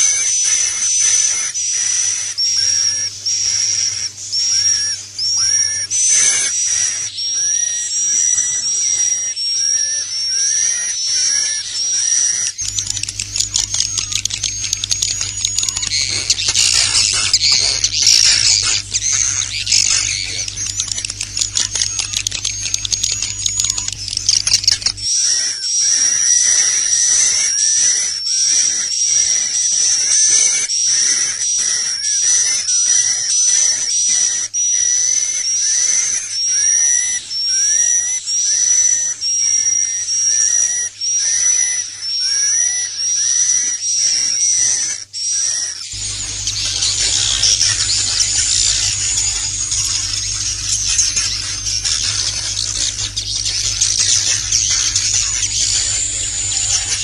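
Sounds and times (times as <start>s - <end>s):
hissy bird chatter: 0.0s - 57.0s
low hum: 12.6s - 25.2s, 46.0s - 57.0s.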